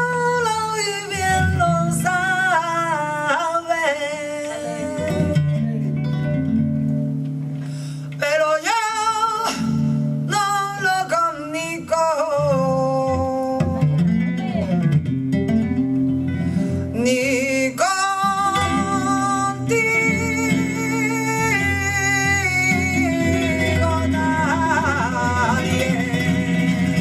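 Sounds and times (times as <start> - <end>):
flamenco guitar: 0.0 - 27.0
person singing long bending phrases: 17.0 - 27.0.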